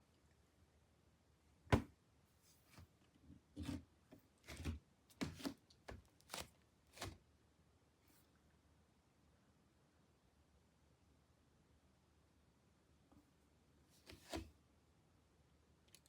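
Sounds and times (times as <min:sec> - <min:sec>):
rustling handling sounds: 0:03.6 - 0:07.2.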